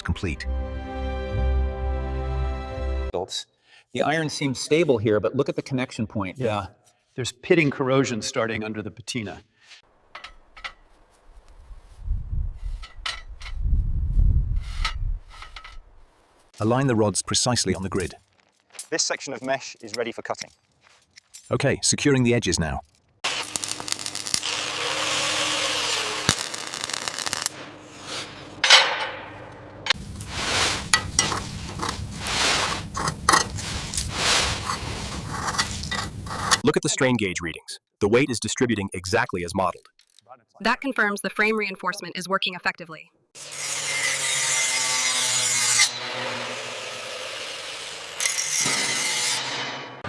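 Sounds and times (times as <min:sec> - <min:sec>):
harsh rasping tool noise: 0:23.2 - 0:28.6, 0:43.4 - 0:49.8
power tool whirring: 0:23.3 - 0:27.8.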